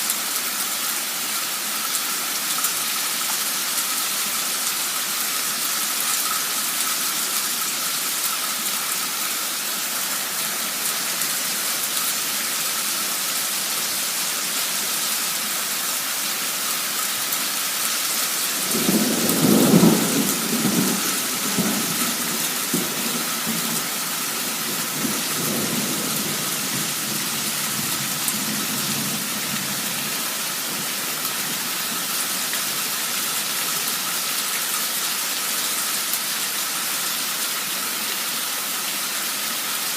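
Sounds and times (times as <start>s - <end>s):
heavy rain hissing: 0.0s - 39.9s
thunder rumbling: 18.6s - 30.1s.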